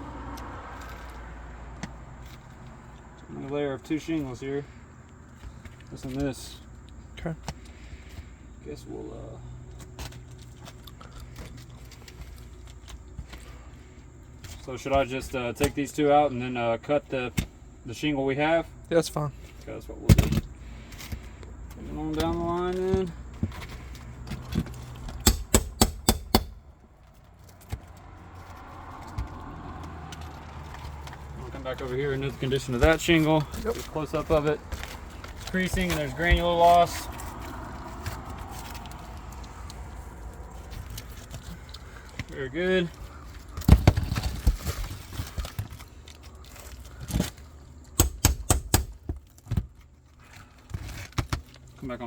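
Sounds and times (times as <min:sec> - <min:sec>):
hammer strikes on nail: 0:25.2 - 0:26.6, 0:48.0 - 0:49.0
knocks on roof shingles: 0:48.0 - 0:49.3.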